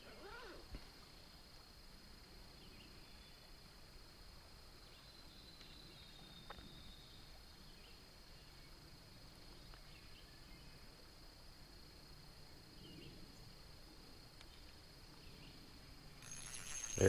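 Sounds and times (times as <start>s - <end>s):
high-pitched insect drone: 16.2s - 17.0s.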